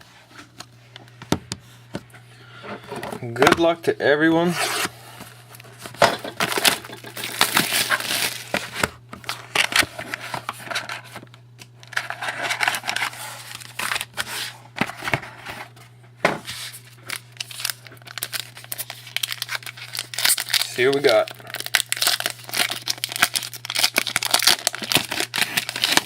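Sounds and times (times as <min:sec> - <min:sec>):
low electrical hum: 0:00.0 - 0:26.0
wrapping crinkling and tearing: 0:05.4 - 0:15.0, 0:16.6 - 0:26.0.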